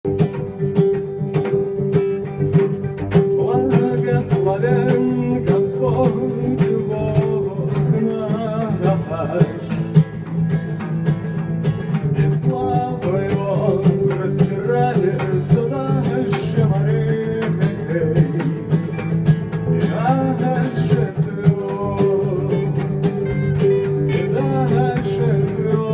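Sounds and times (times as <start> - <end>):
guitar with sharp strikes: 0.0 - 25.9
person singing: 3.2 - 10.0, 12.2 - 19.0, 19.7 - 25.9.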